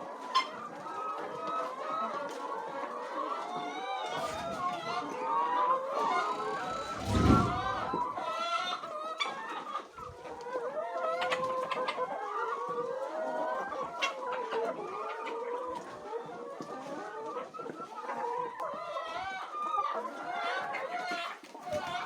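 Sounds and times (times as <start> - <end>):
hens clucking and calling: 0.1 - 22.0.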